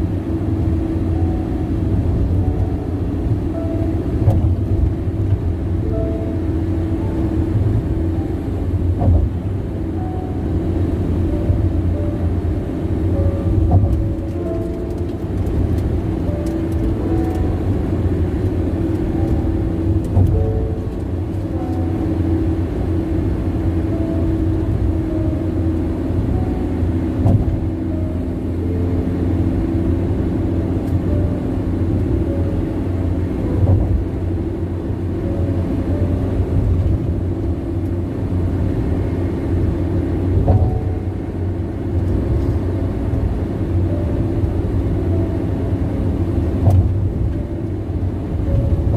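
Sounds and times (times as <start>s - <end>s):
tyre and road noise: 0.0s - 48.9s.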